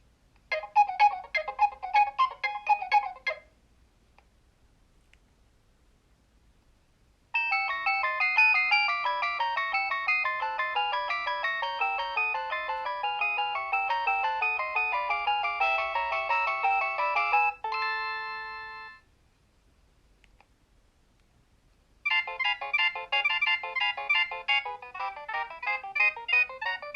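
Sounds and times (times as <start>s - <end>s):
mobile phone ringtone melody: 0.5s - 3.4s, 7.4s - 19.0s, 22.1s - 26.9s.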